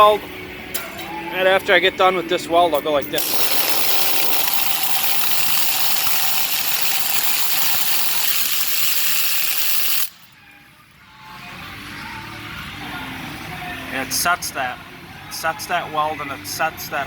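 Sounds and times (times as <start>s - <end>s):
needle scaler rattling on steel: 3.0s - 10.3s.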